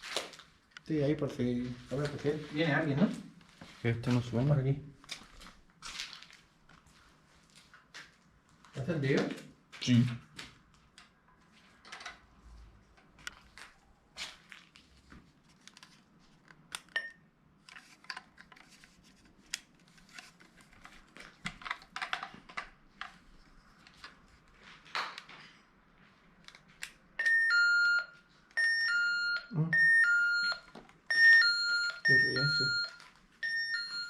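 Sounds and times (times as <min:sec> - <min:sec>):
motion-sensor alarm beeping: 0:27.2 - 0:34.0.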